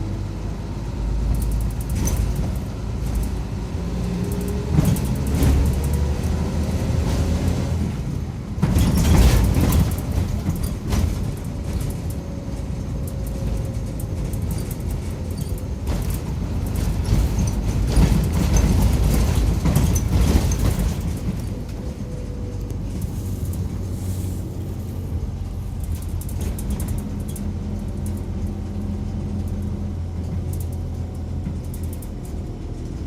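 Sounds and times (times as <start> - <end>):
bus diesel engine: 0.0 - 33.0
road noise: 0.0 - 33.0
bodywork rattles and clicks: 8.6 - 33.0.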